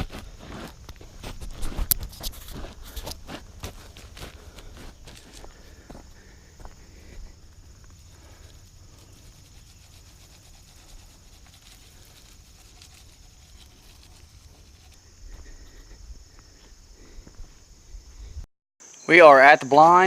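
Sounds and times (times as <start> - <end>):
footsteps: 0.0 - 8.6
crickets chirping: 0.0 - 20.0.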